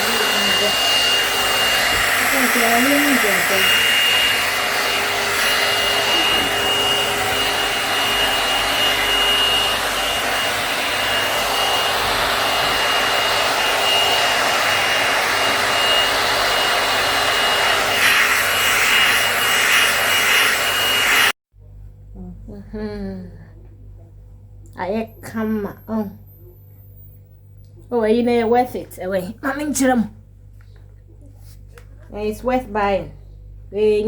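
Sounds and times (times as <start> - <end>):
hair dryer blowing with motor whine: 0.0 - 21.4.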